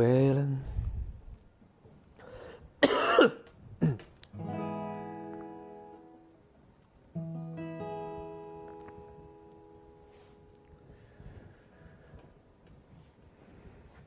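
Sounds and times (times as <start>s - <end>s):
acoustic guitar strummed: 4.3s - 6.4s, 7.1s - 10.8s.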